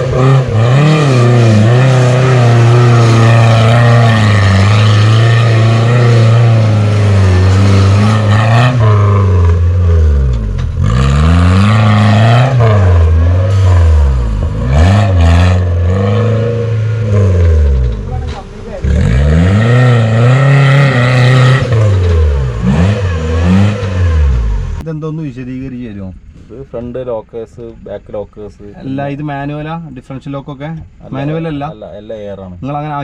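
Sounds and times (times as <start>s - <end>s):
engine revving hard: 0.0s - 18.1s, 18.8s - 24.8s.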